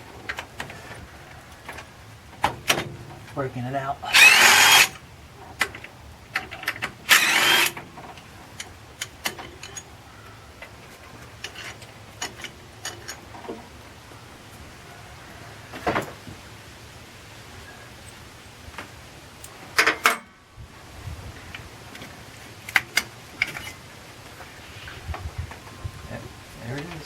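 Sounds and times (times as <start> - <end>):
power tool burst: 4.1 - 5.0, 7.0 - 7.8.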